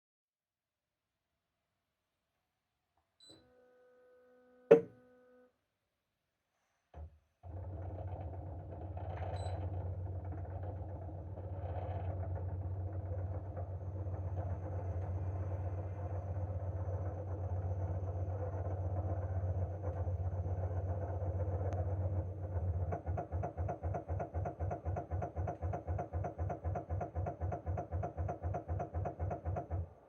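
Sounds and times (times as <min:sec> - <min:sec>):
compressor humming: 0:04.7 - 0:04.9
short low thud: 0:04.7 - 0:04.9.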